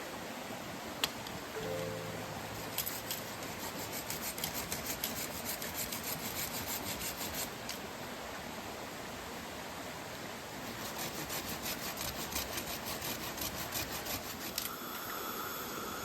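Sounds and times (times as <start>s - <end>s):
steady hiss: 0.0s - 16.0s
rhythmic hand scraping: 2.5s - 7.7s, 10.6s - 14.7s.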